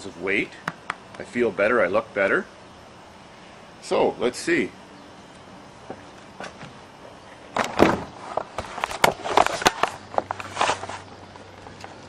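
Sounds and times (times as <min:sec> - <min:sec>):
handling crackles and knocks: 0:07.5 - 0:12.0.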